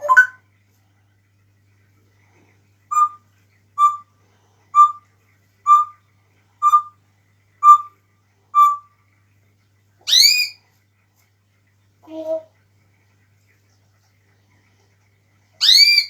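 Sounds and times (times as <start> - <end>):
parrot whistling: 0.0 - 0.4, 2.9 - 3.2, 3.8 - 4.0, 4.8 - 5.0, 5.6 - 6.0, 6.6 - 6.9, 7.6 - 7.9, 8.6 - 8.9, 10.1 - 10.6, 15.6 - 16.0.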